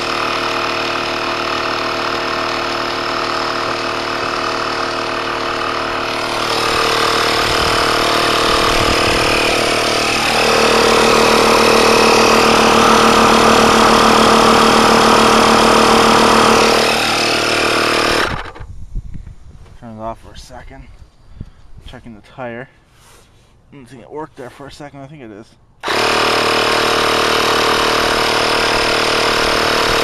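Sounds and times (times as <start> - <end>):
electric air compressor humming: 0.0 - 18.8, 25.8 - 30.0.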